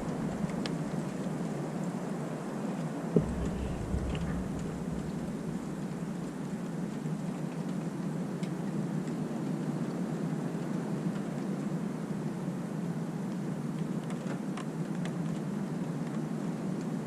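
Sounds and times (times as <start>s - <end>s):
steady rain hiss: 0.0s - 2.0s, 3.2s - 7.3s
low thunder rumble: 3.2s - 7.2s.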